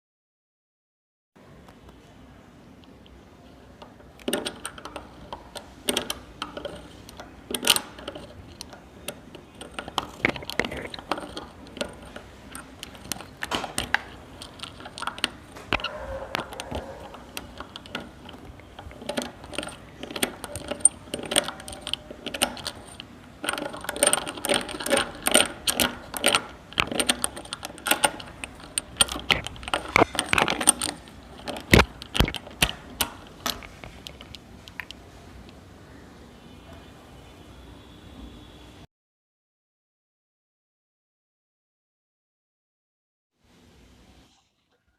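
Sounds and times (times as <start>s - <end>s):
small hard objects clicking and rattling: 4.2s - 35.0s.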